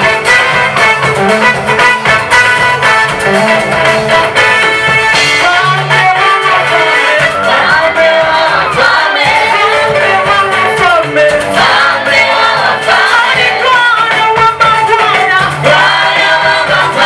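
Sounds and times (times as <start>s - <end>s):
instrumental accompaniment: 0.0s - 17.0s
steady bass line: 0.0s - 17.0s
gospel choir singing: 5.1s - 17.0s.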